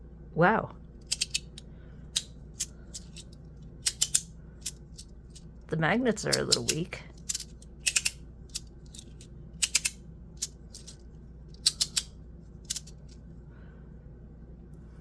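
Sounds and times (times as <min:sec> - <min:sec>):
magnetic slider pieces clicking: 0:01.0 - 0:01.6, 0:02.2 - 0:05.4, 0:06.3 - 0:11.0, 0:11.6 - 0:12.1, 0:12.7 - 0:13.2.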